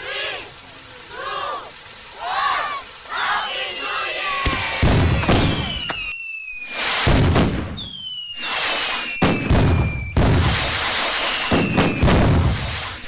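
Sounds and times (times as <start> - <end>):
firework whistles falling in pitch: 2.7 - 13.0
loud firework bangs: 4.4 - 13.0.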